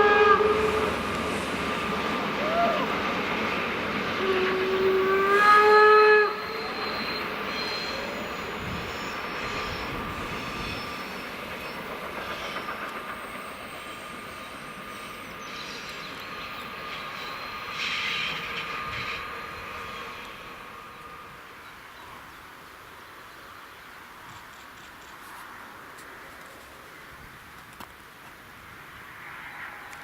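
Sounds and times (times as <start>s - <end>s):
steam locomotive whistle: 0.0s - 3.2s, 4.1s - 11.3s
train rolling past: 0.0s - 30.0s
thin steady squeal: 6.3s - 21.4s.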